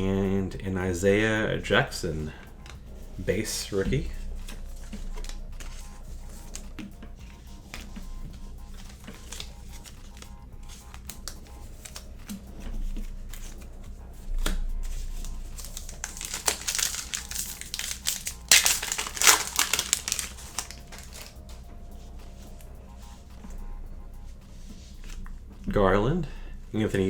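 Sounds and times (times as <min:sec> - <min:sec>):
foil wrapper crinkling and tearing: 0:08.7 - 0:12.1, 0:14.9 - 0:21.4.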